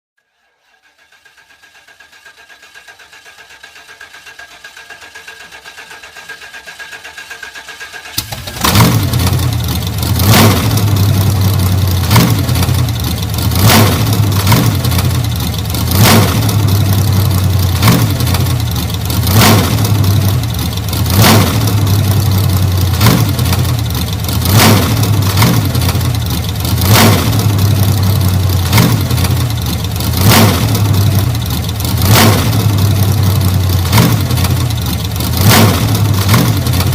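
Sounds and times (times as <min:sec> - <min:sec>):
engine cranking: 0:00.2 - 0:36.9
car engine running loudly: 0:08.1 - 0:36.9.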